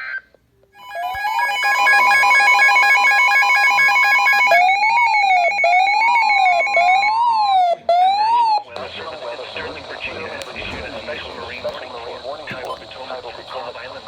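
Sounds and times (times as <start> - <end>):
siren-like warble: 0.8 - 8.8.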